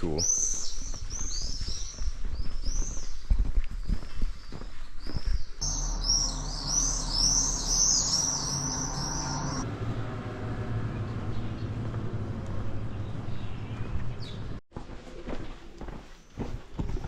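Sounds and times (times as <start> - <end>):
swallows chirping: 0.0 - 9.6.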